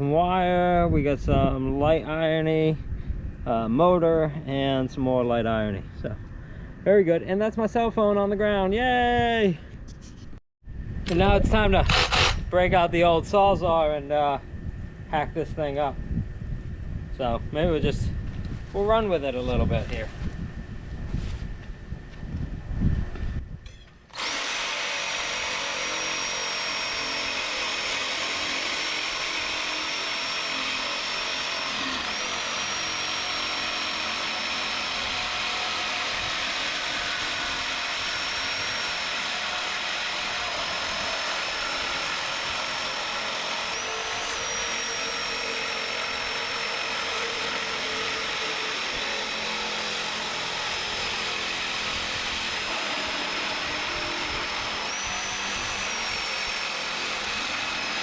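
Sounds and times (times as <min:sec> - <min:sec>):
reciprocating saw cutting metal: 0:11.8 - 0:12.5, 0:24.1 - 0:58.0.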